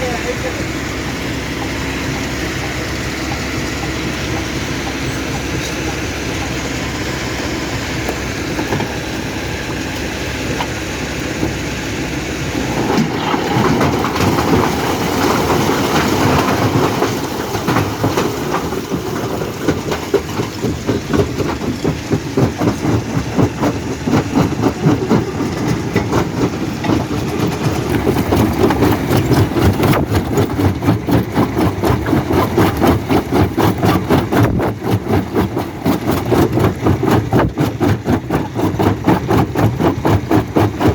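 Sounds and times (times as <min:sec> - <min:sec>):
rhythmic pounding of rock crushing: 0:00.0 - 0:40.9
stone-crushing machine rumbling: 0:00.0 - 0:40.9.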